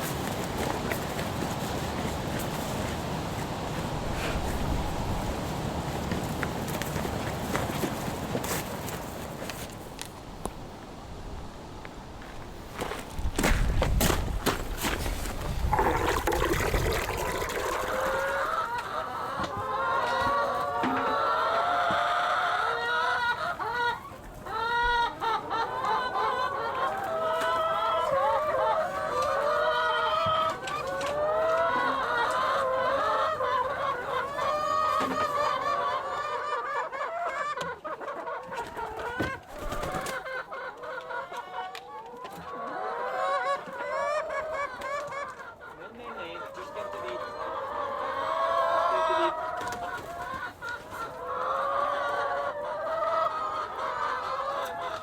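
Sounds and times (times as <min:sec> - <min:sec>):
chickens clucking: 0:12.3 - 0:55.0.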